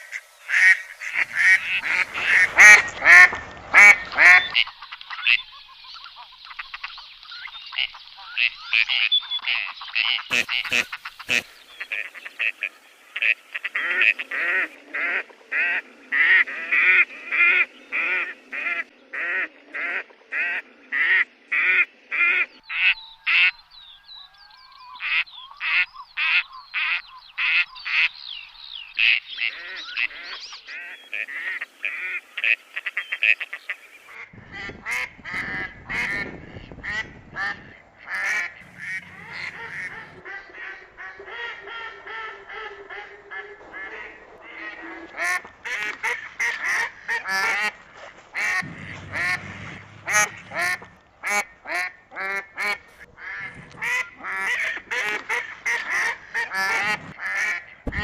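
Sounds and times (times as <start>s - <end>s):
ducks quacking: 0.0s - 23.6s, 29.0s - 58.0s
low rumble: 48.6s - 51.0s.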